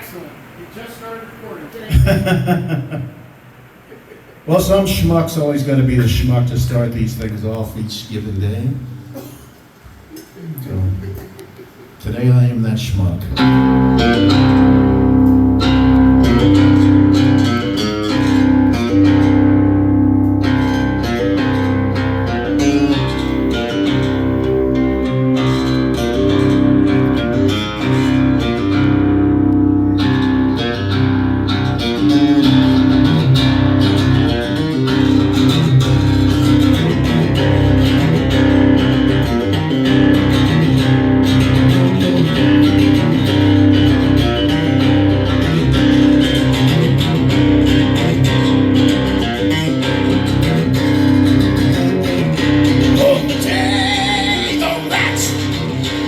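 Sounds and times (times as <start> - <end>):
guitar strummed chords: 13.3 - 56.0
wavering voice: 52.8 - 56.0.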